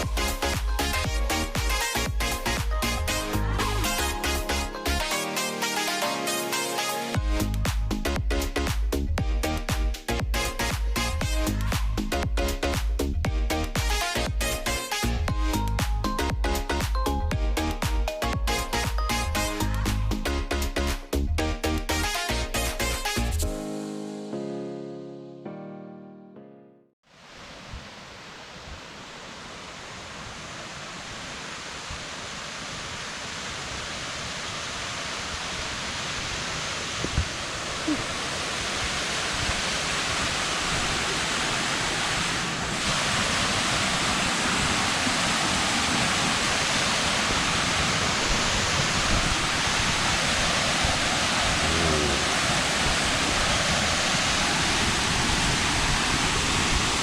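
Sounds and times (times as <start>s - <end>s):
waterfall rushing: 0.0s - 7.3s, 27.1s - 57.0s.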